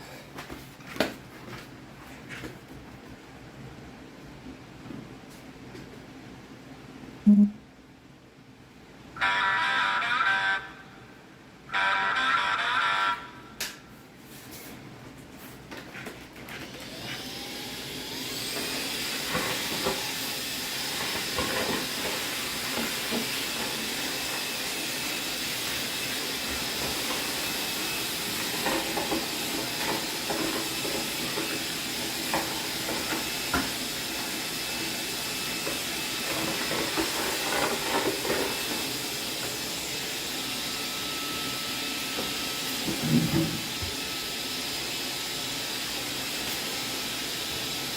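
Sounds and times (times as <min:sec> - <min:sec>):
electric appliance hissing: 0:16.5 - 0:47.9.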